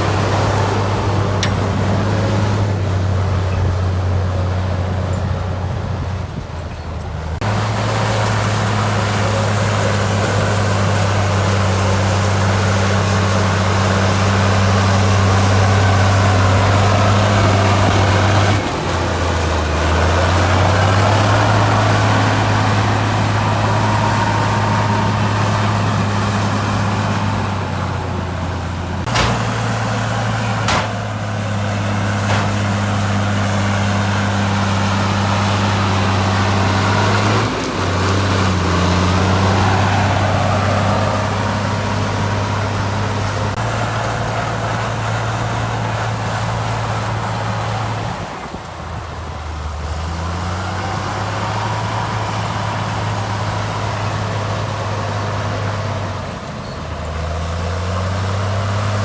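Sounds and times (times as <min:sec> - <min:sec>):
heavy diesel engine running: 0:00.0 - 0:59.0
mechanical clatter: 0:29.0 - 0:29.9.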